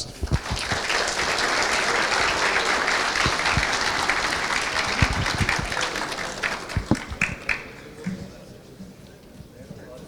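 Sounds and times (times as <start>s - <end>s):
audience applauding: 0.0s - 8.4s.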